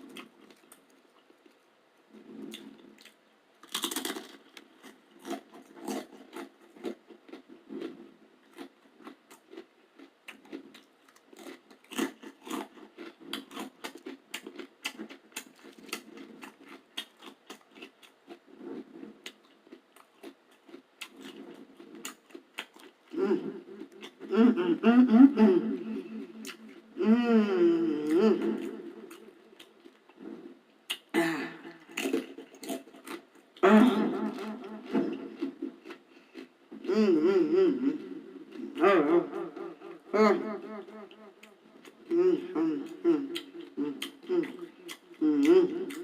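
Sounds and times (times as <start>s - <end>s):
person chewing crunchy crackers: 0.0s - 46.0s.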